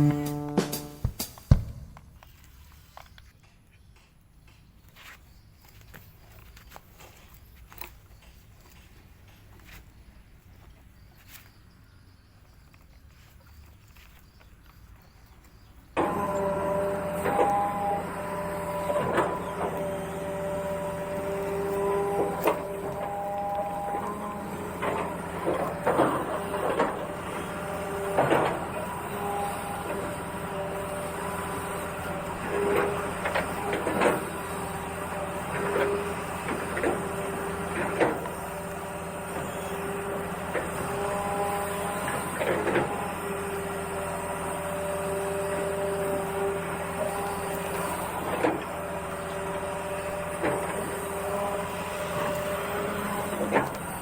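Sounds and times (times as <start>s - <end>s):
small electric motors whining: 15.9s - 54.0s.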